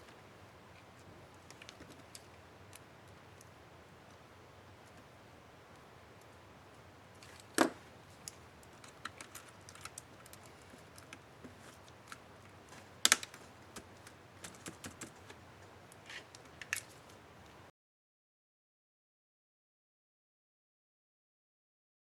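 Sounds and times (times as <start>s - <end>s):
plastic laptop keyboard clicks: 13.1s - 15.2s.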